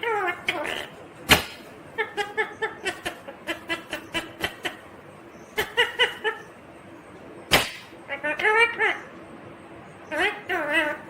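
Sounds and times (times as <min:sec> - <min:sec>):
parrot chattering: 0:00.0 - 0:04.9, 0:05.5 - 0:06.5, 0:07.8 - 0:09.1, 0:10.1 - 0:11.0.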